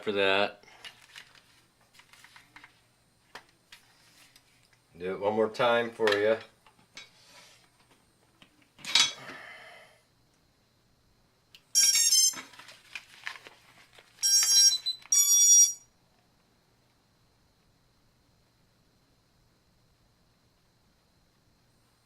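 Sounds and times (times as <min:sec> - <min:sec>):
electronic start-up beeps: 0:11.8 - 0:12.4.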